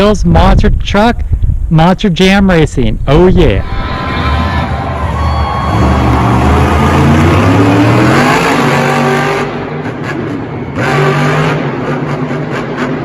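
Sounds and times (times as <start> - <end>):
monster truck engine revving: 3.7 - 13.0.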